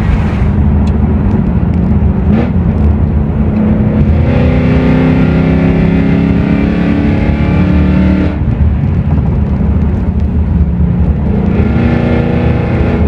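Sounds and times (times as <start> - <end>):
car engine running: 0.0 - 4.4.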